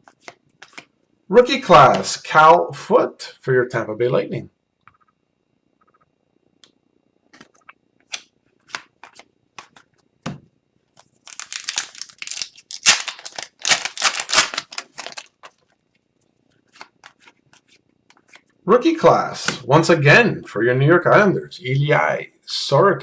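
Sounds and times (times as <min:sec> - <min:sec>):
cards clicking and tapping: 0:07.3 - 0:10.4, 0:11.3 - 0:15.3
wrapper crinkling and tearing: 0:11.2 - 0:15.7.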